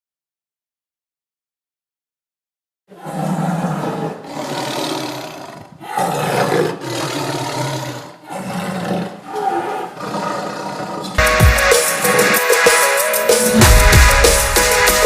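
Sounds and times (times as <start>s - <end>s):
large animal roaring: 2.9s - 11.2s.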